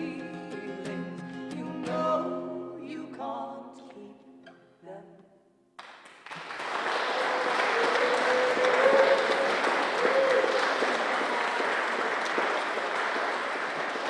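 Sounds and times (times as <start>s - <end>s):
audience applauding: 5.8s - 14.0s.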